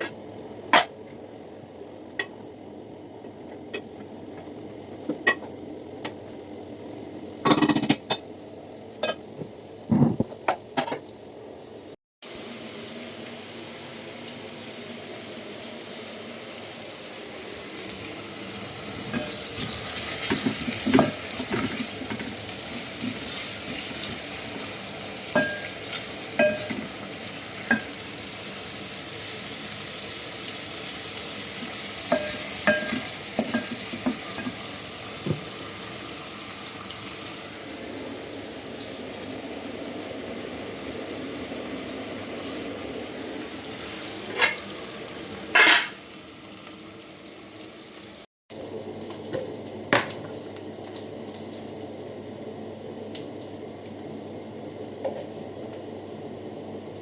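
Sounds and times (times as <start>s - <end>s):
food sizzling in a pan: 12.2s - 52.0s.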